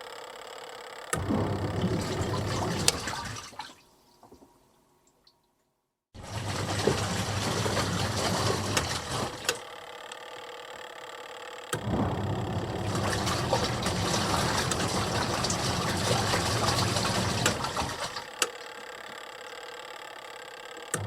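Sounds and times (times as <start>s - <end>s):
washing machine running: 1.1s - 3.8s, 6.2s - 9.9s, 11.6s - 18.8s
water rushing: 1.2s - 3.8s, 11.9s - 18.2s.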